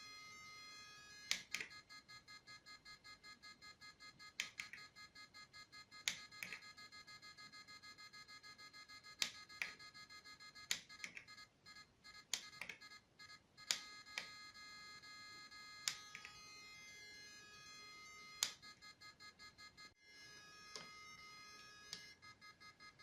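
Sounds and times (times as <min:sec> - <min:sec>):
high electronic beeping tones: 0:00.0 - 0:23.0
sharp clicks: 0:04.3 - 0:04.9, 0:06.0 - 0:06.6, 0:09.2 - 0:09.8, 0:10.7 - 0:11.4, 0:12.2 - 0:12.9, 0:13.6 - 0:14.3, 0:18.4 - 0:18.6.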